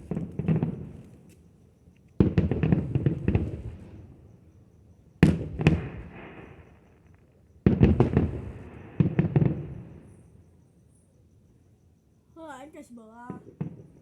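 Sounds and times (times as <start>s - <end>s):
fireworks bangs: 0.0s - 1.3s, 2.2s - 4.0s, 5.2s - 6.7s, 7.6s - 10.1s, 12.7s - 14.0s.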